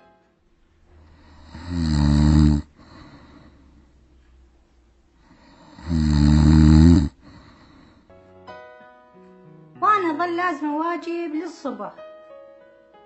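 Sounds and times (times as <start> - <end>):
man snoring loudly: 1.0 - 3.5, 5.3 - 7.9.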